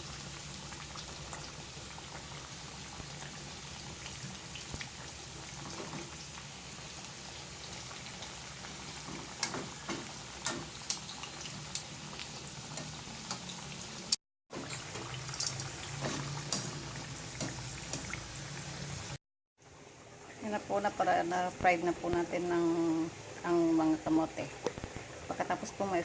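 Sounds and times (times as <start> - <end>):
food frying in oil: 0.0 - 26.0
oil popping and crackling: 7.7 - 19.2.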